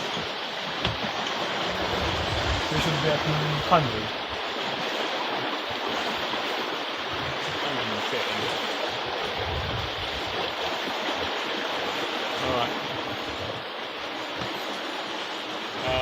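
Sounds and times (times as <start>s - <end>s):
water rushing past a yacht: 0.0s - 16.0s
wind rushing: 1.6s - 4.4s, 9.0s - 10.6s.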